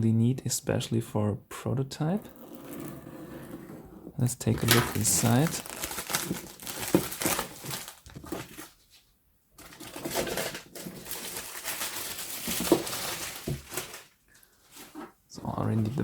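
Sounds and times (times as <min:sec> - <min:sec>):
cardboard box and wrapping rustling: 0:04.5 - 0:08.9, 0:09.6 - 0:14.1.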